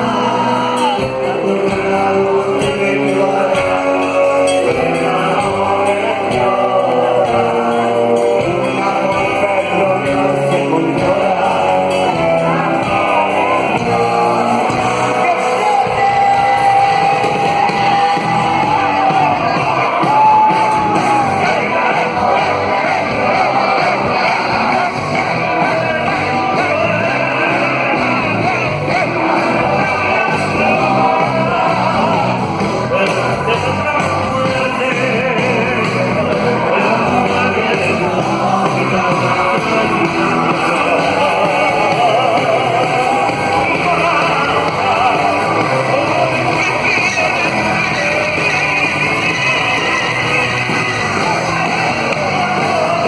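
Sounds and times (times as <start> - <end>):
person singing: 0.0 - 53.0
rock band playing live: 0.0 - 53.0.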